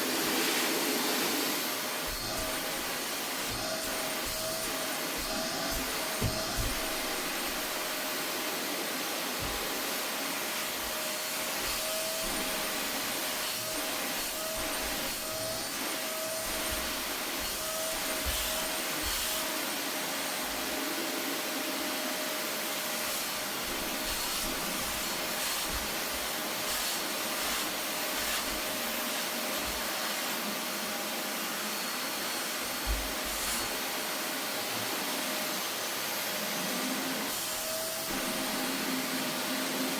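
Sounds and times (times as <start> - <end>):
vacuum cleaner running: 0.0 - 39.9
nozzle thumping against cushions: 2.2 - 8.0, 16.5 - 19.4.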